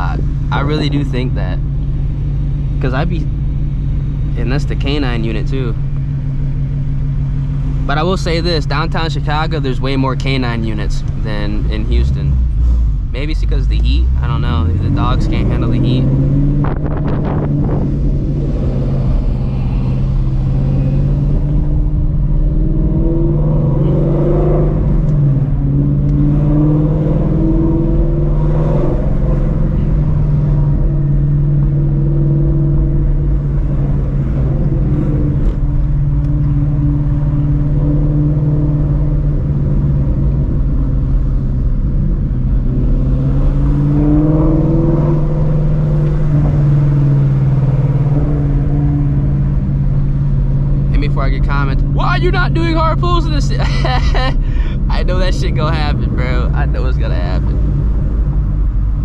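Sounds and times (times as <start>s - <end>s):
car engine exhaust while driving: 0.0s - 59.0s.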